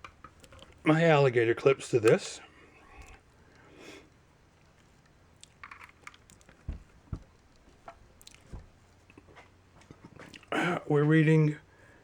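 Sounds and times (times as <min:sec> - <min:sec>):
test clips clicking and scraping: 0:00.0 - 0:00.8, 0:04.6 - 0:10.5
dull thumps: 0:06.5 - 0:10.8.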